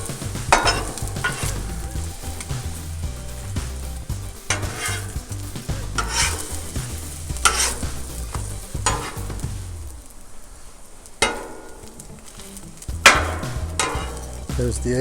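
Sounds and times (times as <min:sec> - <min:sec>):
metal spatula scraping griddle: 0:00.0 - 0:09.8, 0:11.2 - 0:15.0
low rumble: 0:00.0 - 0:10.3
food sizzling on griddle: 0:00.0 - 0:15.0.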